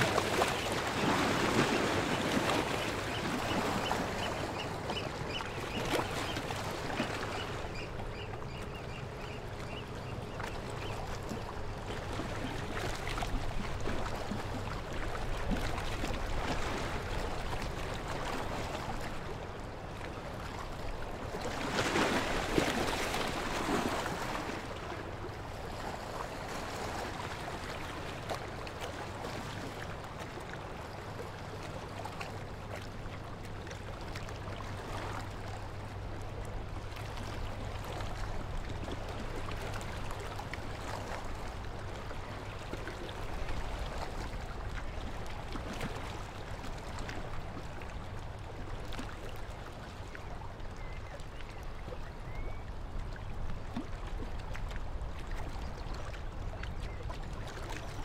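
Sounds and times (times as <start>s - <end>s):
water bird calling: 0.0s - 26.4s, 36.8s - 54.6s, 55.2s - 58.0s.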